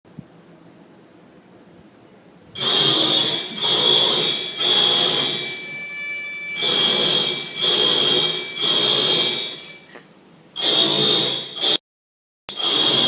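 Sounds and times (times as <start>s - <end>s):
high-pitched alarm beeps: 2.6s - 10.0s, 10.6s - 11.8s, 12.5s - 13.0s.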